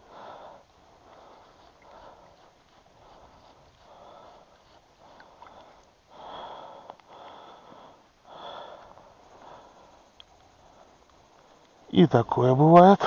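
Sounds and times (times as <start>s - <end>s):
footsteps crunching in snow: 0.7s - 5.4s.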